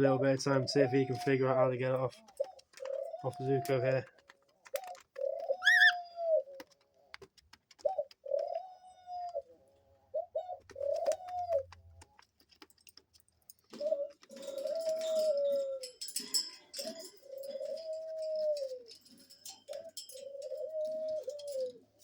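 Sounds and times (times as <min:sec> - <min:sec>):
dove cooing: 0:00.0 - 0:12.4, 0:13.6 - 0:22.0.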